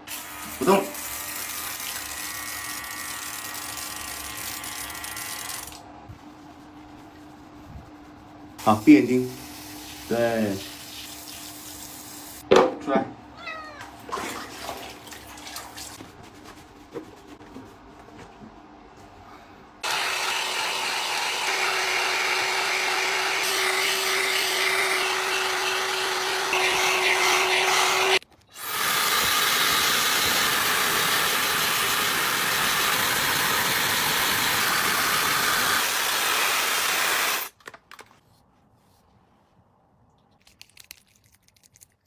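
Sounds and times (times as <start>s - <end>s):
hair dryer blowing: 19.8s - 28.2s, 28.8s - 37.5s.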